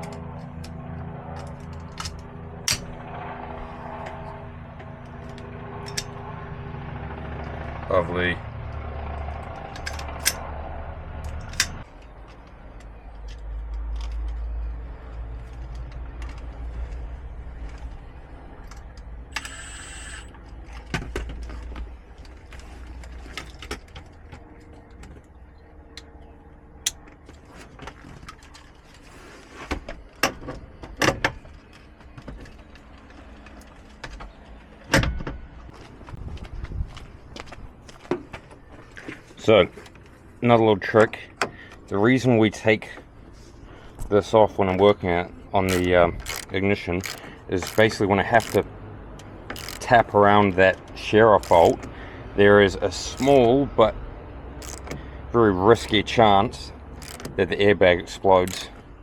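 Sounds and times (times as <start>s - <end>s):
high-pitched whir: 19.3s - 20.3s.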